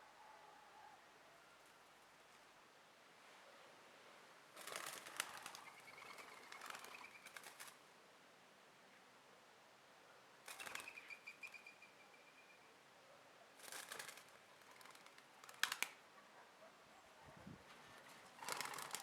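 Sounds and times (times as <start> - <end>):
bird wingbeats fluttering: 4.5 - 7.8, 10.4 - 11.6, 13.6 - 16.0, 17.8 - 19.0.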